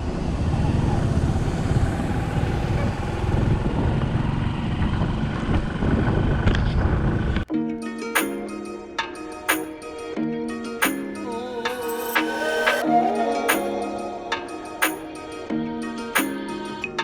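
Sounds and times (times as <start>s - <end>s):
road vehicle running: 0.0s - 7.4s
wind rumble on microphone: 0.0s - 7.4s.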